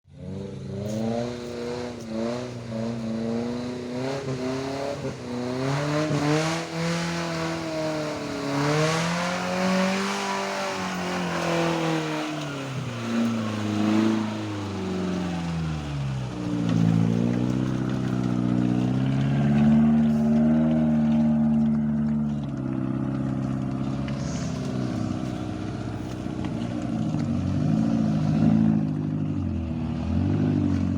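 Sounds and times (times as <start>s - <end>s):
off-road engine revving: 0.0s - 30.9s.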